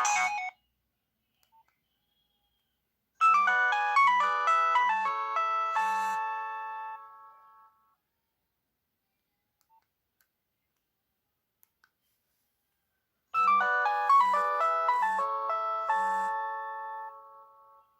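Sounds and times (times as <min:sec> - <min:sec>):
electronic ringtone tune over a beat: 0:00.0 - 0:00.6, 0:03.2 - 0:07.0, 0:13.4 - 0:17.3
ringtone melody: 0:00.0 - 0:00.7, 0:03.2 - 0:07.9, 0:13.4 - 0:17.9.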